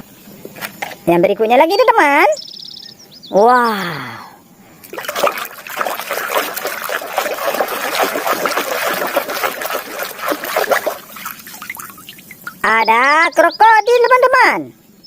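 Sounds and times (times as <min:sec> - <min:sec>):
water splashing and trickling: 0:04.8 - 0:12.9.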